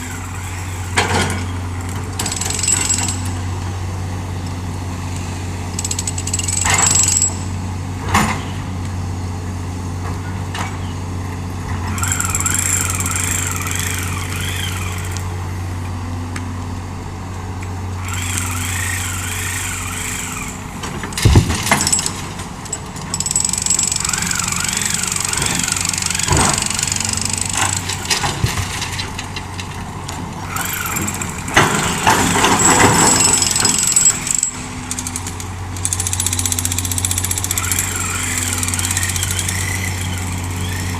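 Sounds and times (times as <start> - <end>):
excavator diesel engine running: 0.0 - 40.9
sharp knocks: 21.2 - 22.0.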